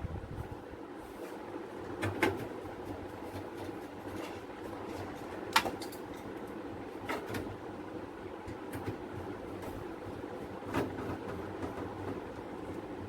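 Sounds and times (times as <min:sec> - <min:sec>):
steady background hum: 0:00.0 - 0:13.0
clicks and knocks of computer parts: 0:03.3 - 0:06.3.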